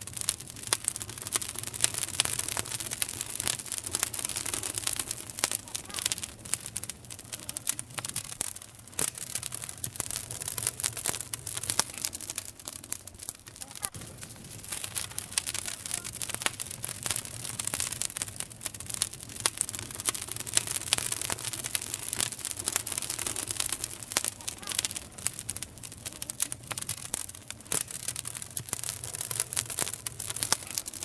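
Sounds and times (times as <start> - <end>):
campfire crackling and popping: 0.0 - 31.0.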